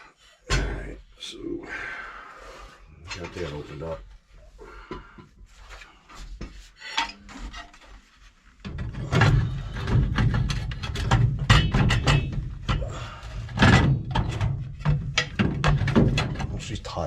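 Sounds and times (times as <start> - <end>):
thuds and metallic clatter: 8.6 - 16.8.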